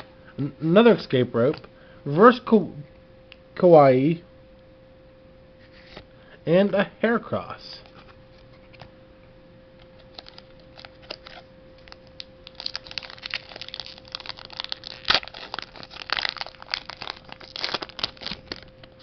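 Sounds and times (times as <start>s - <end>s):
faint steady hum: 0.0s - 19.0s
foil wrapper crinkling: 10.0s - 19.0s.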